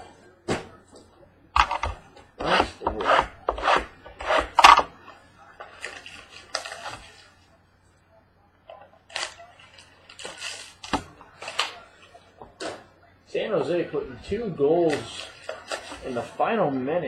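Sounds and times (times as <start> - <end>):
cardboard scraping and rustling: 1.6 - 5.0.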